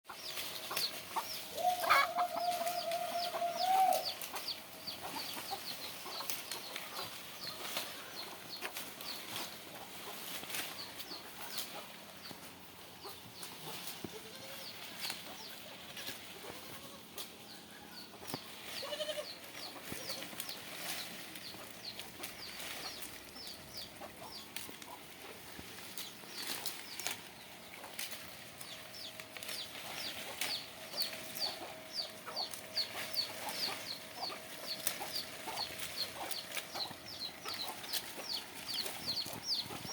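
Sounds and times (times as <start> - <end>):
chickens clucking and chirping: 0.1 - 39.9
goat bleating: 13.7 - 17.3, 18.6 - 20.4.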